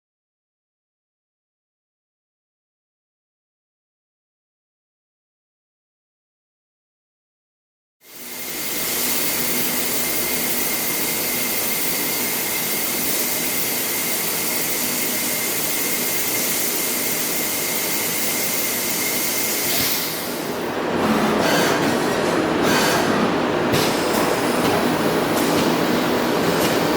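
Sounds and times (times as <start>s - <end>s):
lathe machining metal: 8.0s - 26.9s.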